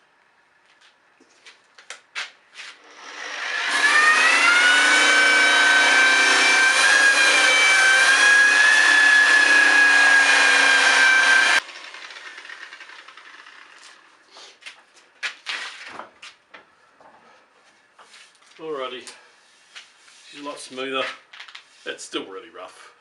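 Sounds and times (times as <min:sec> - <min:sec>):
electric sander whining: 0:02.8 - 0:13.9.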